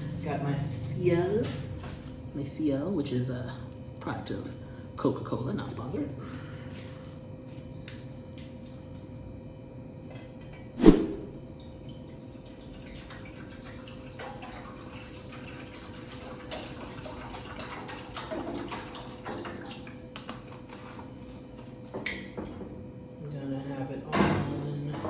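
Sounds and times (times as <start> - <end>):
water pouring into a pot: 11.3 - 19.9.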